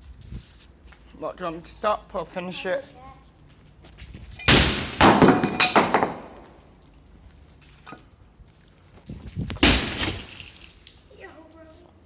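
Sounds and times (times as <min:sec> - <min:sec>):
glass smashing crashes: 0:04.4 - 0:06.4, 0:09.6 - 0:10.8.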